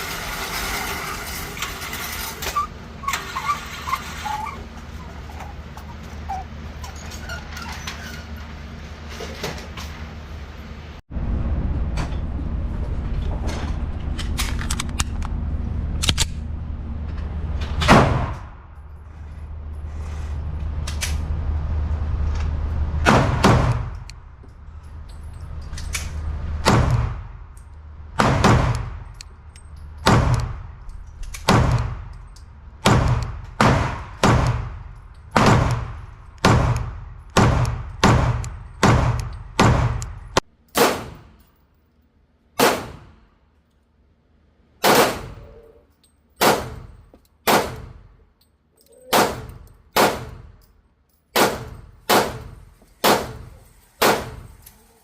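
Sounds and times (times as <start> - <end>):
steady low hum: 8.4 - 55.0
pistol shots: 32.8 - 34.8, 35.4 - 40.0, 42.6 - 43.2, 44.8 - 45.4, 46.4 - 48.0, 49.1 - 50.5, 51.4 - 53.4, 54.0 - 54.5.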